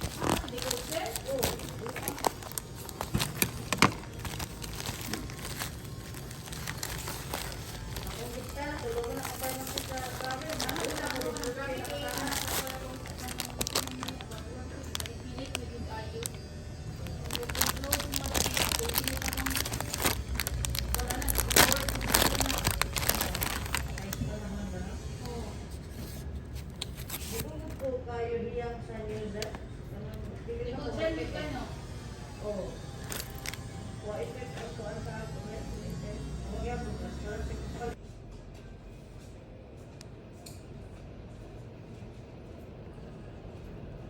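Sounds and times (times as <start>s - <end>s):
plastic packaging crinkling: 0.0s - 16.4s, 17.0s - 24.5s, 25.8s - 27.9s, 33.0s - 33.7s.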